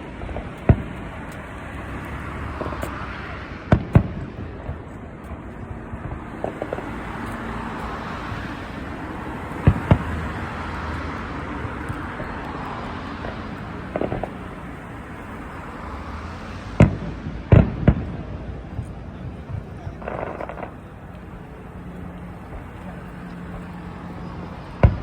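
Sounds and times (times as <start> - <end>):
fireworks bursting: 0.0 - 25.0
steady background noise: 0.0 - 25.0.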